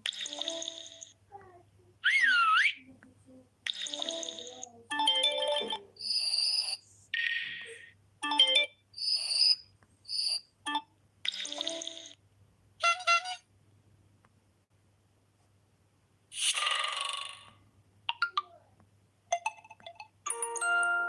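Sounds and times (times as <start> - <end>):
phone ringtone: 3.8 - 6.8, 8.2 - 9.4, 20.3 - 21.0.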